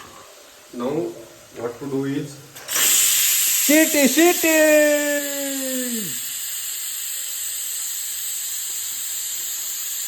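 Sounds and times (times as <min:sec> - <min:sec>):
pressure cooker steam hissing: 0:02.6 - 0:10.0.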